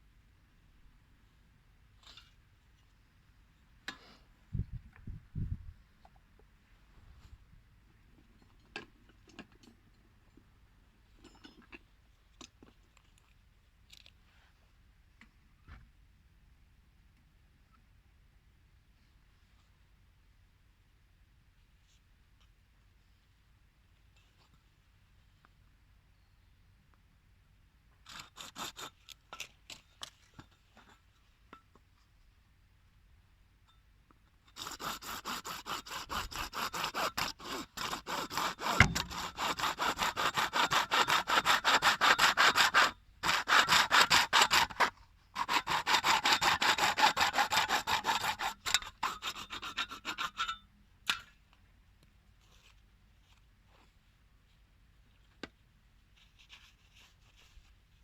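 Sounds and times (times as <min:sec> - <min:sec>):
hand tool rasping: 0:34.5 - 0:50.6.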